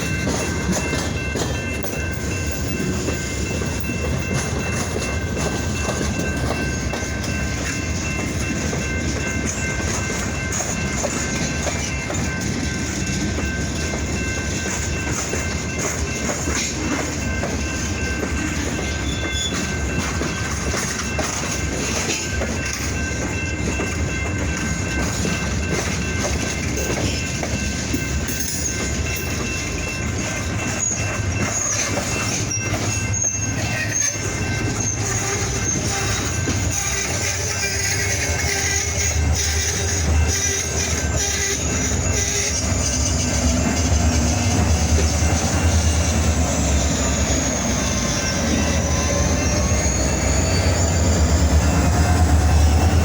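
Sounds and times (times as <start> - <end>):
freight train rumbling: 0.0 - 53.0
wheels clicking over rail joints: 0.0 - 53.0
high-pitched wheel squeals: 19.0 - 19.7, 30.7 - 53.0.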